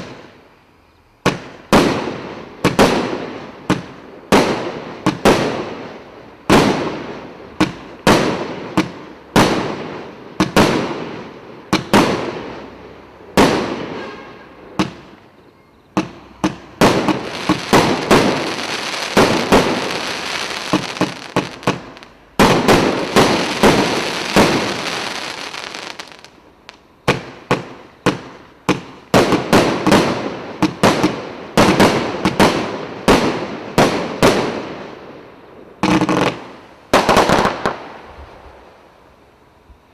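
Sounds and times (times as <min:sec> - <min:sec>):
firework bangs: 0:01.2 - 0:15.2, 0:15.9 - 0:35.0, 0:35.8 - 0:38.4
firework crackling: 0:16.0 - 0:35.0, 0:35.8 - 0:38.7.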